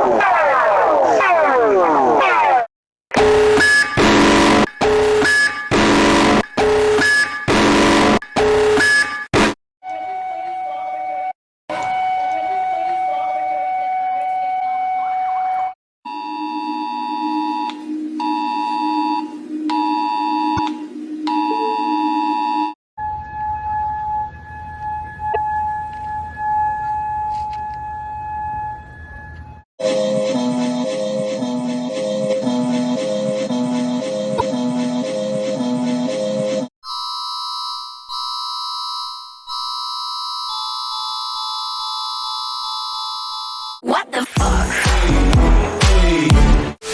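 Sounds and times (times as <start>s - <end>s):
high electronic alert tones: 3.2s - 9.6s
music: 29.8s - 36.7s, 43.9s - 46.8s.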